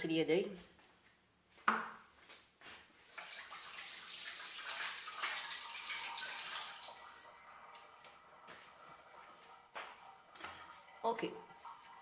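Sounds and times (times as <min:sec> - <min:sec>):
hands washing under water: 0:02.7 - 0:12.0
water running from a tap: 0:03.1 - 0:12.0.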